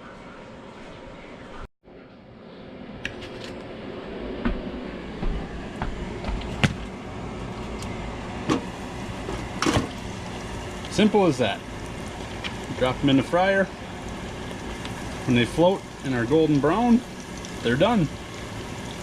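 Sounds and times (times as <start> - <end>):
hot oil bubbling in fryer: 8.3 - 19.0.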